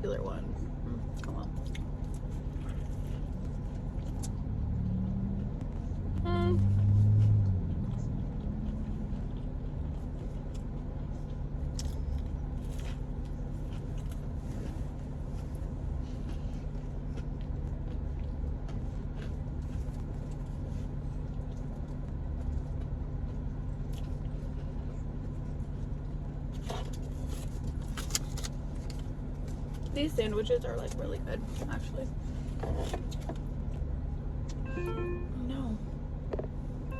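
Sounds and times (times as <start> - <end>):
car engine idling: 0.0 - 36.9
chewing and biting: 1.1 - 6.0, 6.6 - 30.0.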